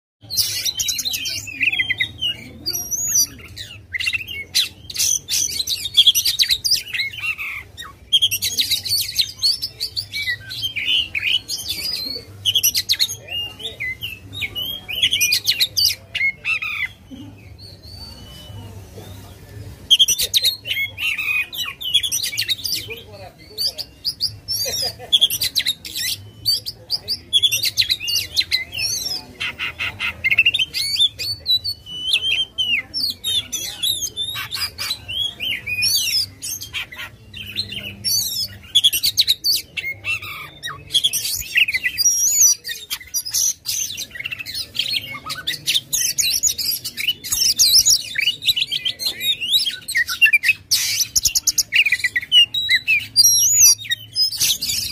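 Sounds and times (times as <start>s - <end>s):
bird singing whistles and chirps: 30.2s - 54.9s.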